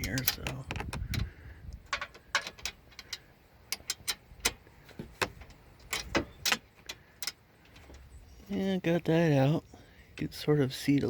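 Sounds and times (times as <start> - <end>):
metallic clicks of hand tools: 1.8 - 4.6.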